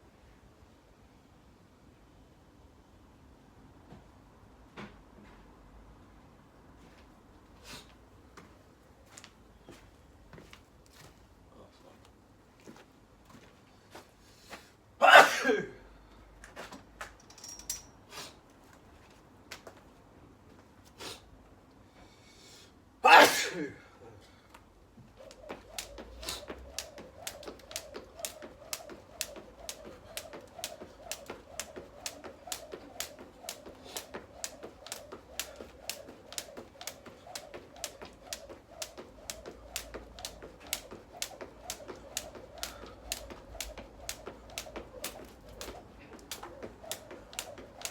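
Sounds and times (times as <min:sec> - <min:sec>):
person sneezing: 0:15.0 - 0:15.8, 0:23.0 - 0:24.0
jump rope ticking on floor: 0:25.2 - 0:47.9.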